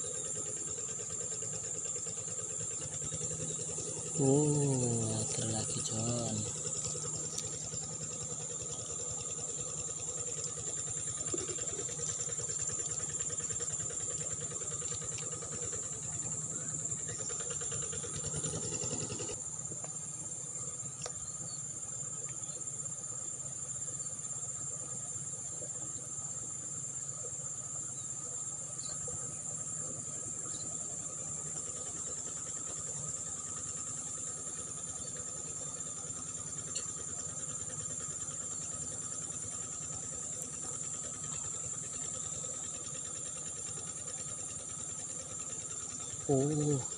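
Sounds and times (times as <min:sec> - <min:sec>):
crickets chirring: 0:00.0 - 0:46.9.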